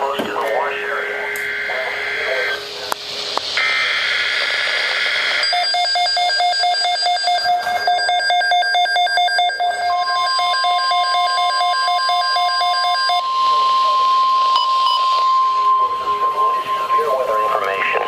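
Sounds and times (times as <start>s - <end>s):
fast pulsing electronic beeping: 5.4s - 18.0s
buzzy electronic data screeches: 11.6s - 18.0s.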